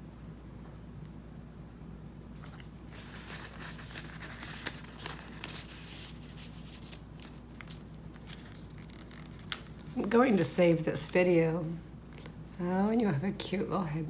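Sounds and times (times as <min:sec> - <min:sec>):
paper and card rustling: 0:02.4 - 0:10.6.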